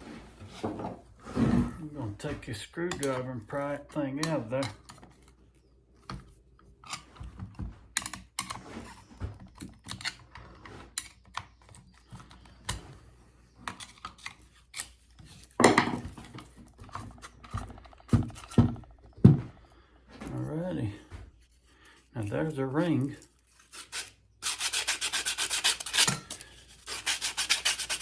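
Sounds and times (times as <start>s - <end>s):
screwdriver clicking and scraping metal: 23.2s - 28.0s.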